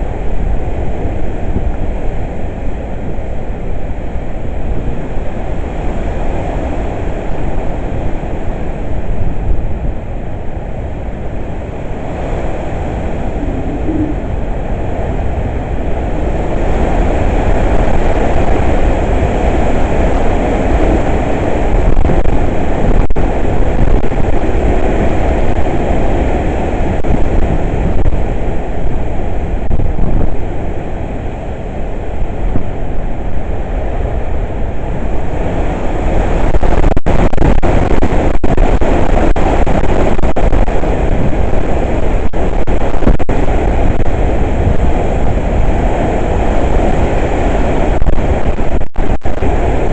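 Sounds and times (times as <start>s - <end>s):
strong wind rushing: 0.0s - 49.9s.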